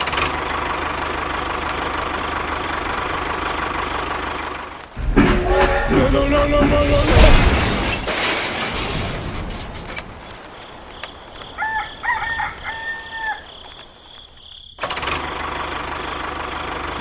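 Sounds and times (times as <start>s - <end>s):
rooster crowing: 11.4s - 13.7s.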